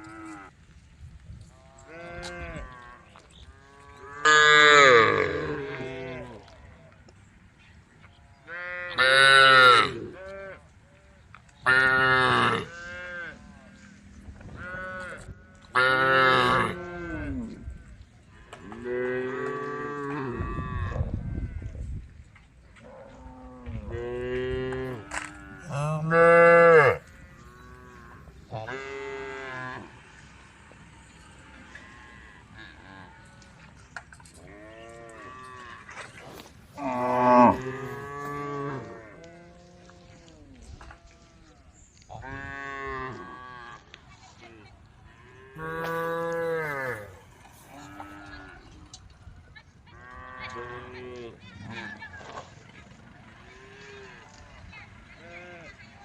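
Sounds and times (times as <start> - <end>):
cows mooing: 1.6 - 6.4, 11.7 - 17.6, 22.8 - 41.3, 45.2 - 48.8.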